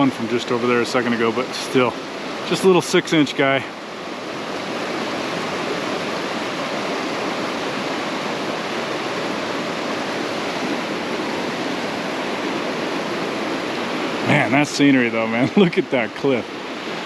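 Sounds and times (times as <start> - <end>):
stream water rushing over rocks: 0.0 - 17.0.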